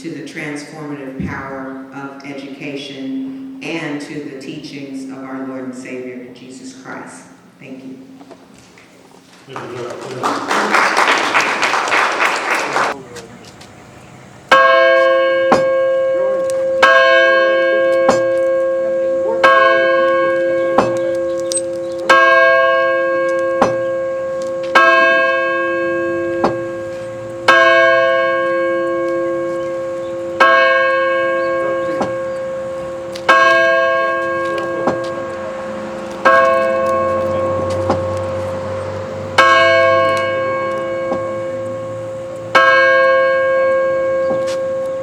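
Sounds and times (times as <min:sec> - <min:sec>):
church bell tolling: 0:01.4 - 0:06.2, 0:14.5 - 0:45.0.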